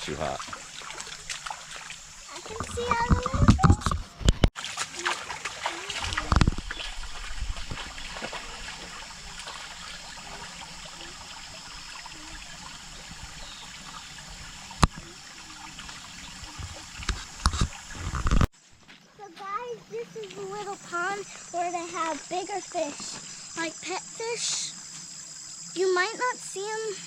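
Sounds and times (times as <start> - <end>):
creek trickling: 0.0 - 27.0.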